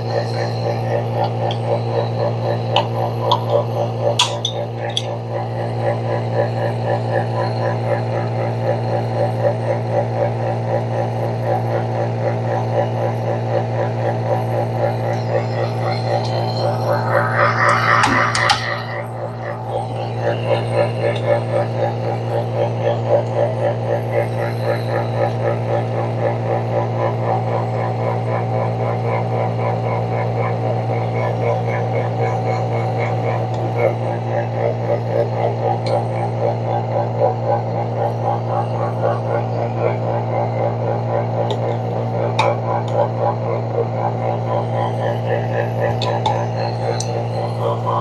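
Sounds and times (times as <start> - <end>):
vacuum pump pulsing hum: 0.0 - 48.0.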